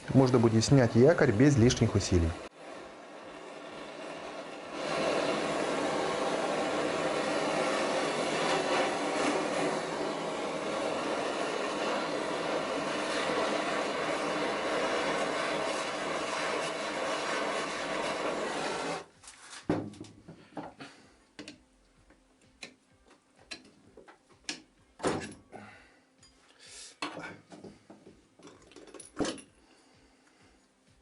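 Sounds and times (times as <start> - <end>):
gas torch hissing: 0.0 - 19.1.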